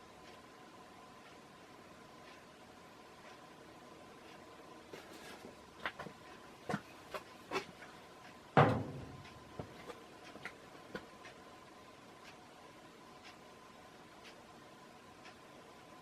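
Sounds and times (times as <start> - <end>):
faint steady hum: 0.0 - 16.0
loud thump: 8.6 - 9.2
light clicks and knocks: 8.6 - 11.1.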